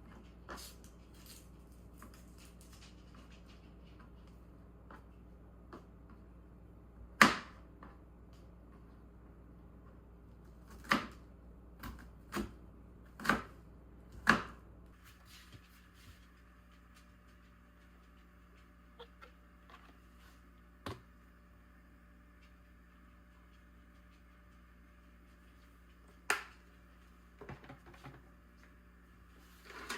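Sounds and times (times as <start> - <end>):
low steady hum: 0.0 - 29.9.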